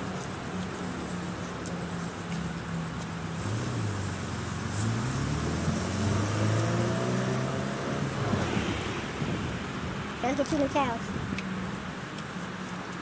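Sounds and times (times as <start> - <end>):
vehicle engine speeding up: 3.3 - 9.6
wind noise: 5.4 - 13.0.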